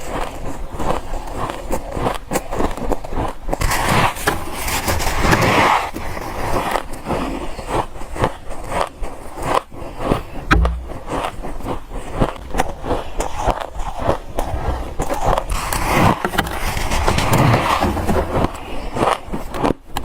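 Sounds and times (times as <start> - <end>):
dull low thump: 10.5 - 11.3.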